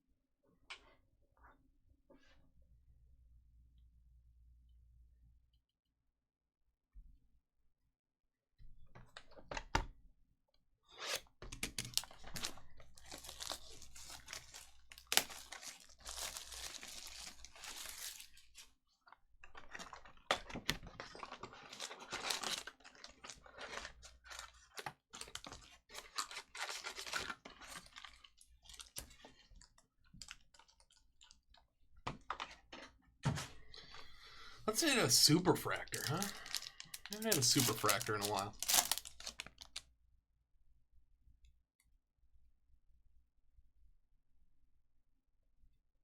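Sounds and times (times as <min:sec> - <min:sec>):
packaging ripping and crinkling: 0:11.8 - 0:18.7, 0:19.7 - 0:29.0, 0:35.7 - 0:39.8.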